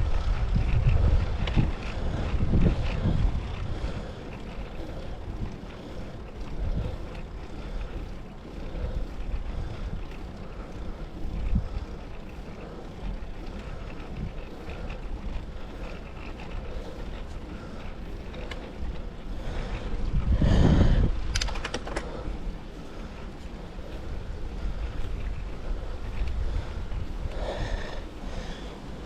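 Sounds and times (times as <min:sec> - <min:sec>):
wind buffeting microphone: 0:00.0 - 0:29.0.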